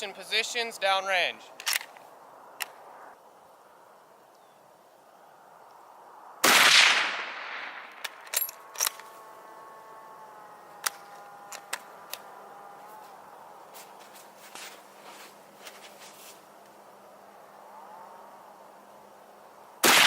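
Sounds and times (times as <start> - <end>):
rifle shot: 6.4 - 8.2.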